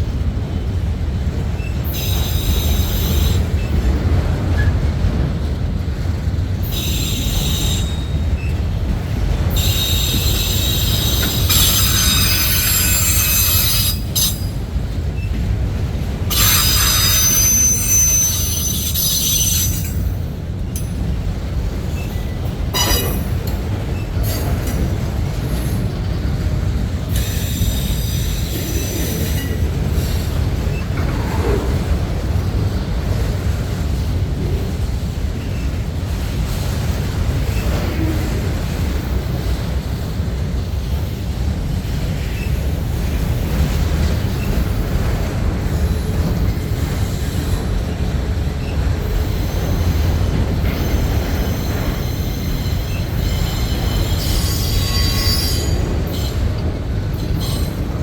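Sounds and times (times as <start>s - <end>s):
train cars rumbling past: 0.0s - 58.0s
wheels squealing: 9.5s - 14.6s, 16.3s - 20.2s, 48.6s - 56.6s.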